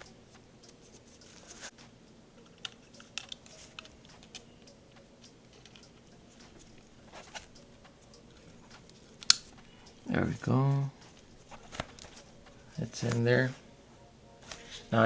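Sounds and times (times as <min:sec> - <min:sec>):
small metal parts clicking: 0:02.4 - 0:07.5.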